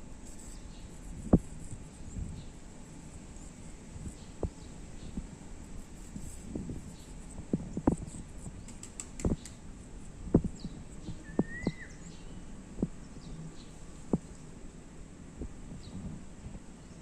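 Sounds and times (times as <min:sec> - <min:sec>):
soft knocks and thumps: 0:07.5 - 0:08.2, 0:10.3 - 0:11.8.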